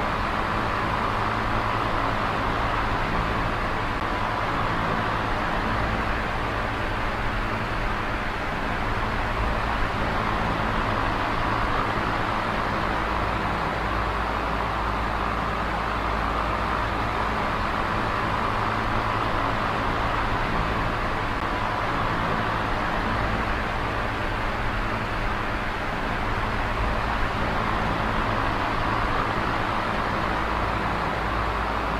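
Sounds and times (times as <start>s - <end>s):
electric fan air rushing: 0.0s - 31.9s
fan motor hum: 0.0s - 31.9s.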